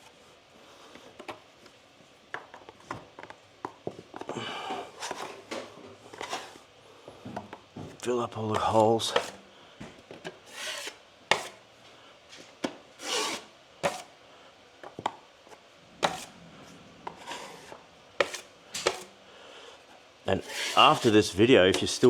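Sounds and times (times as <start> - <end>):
drywall knife scraping plaster: 10.5 - 11.6, 13.0 - 14.1, 17.1 - 19.1, 20.4 - 22.0.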